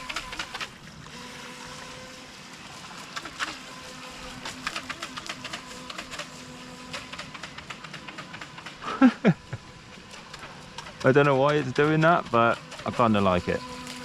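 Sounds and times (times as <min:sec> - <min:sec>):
small electric motor humming: 0:00.0 - 0:14.0
quick ticks and splashes: 0:02.6 - 0:09.0.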